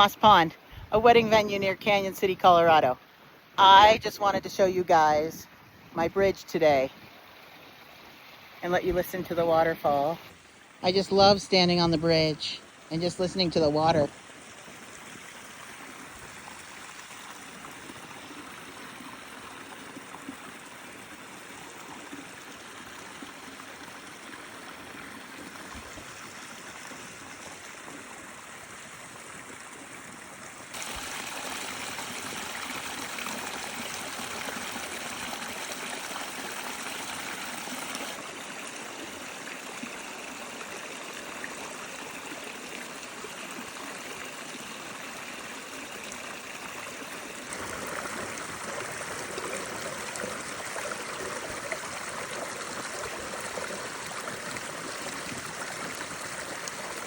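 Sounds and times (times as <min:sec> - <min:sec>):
water rushing over small waterfall: 0:13.6 - 0:57.0.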